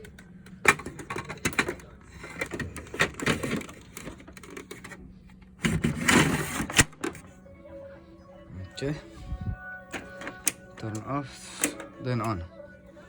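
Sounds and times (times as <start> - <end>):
paper tray sliding rasp: 5.6 - 6.9.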